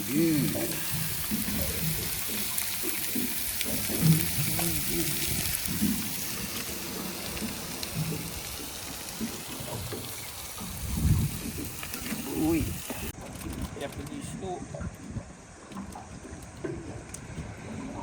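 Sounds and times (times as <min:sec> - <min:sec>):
fish fillets sizzling in frying pan: 0:00.0 - 0:13.1.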